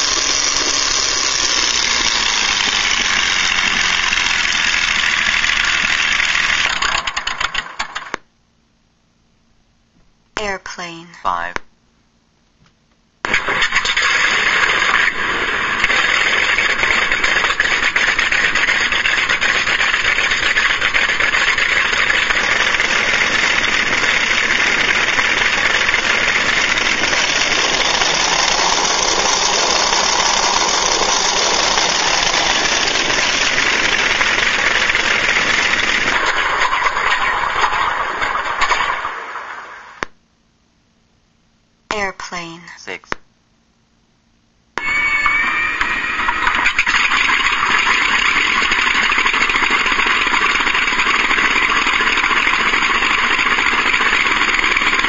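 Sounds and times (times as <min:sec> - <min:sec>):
aircraft piston engine sound effect: 0:00.0 - 0:07.5, 0:13.6 - 0:38.4.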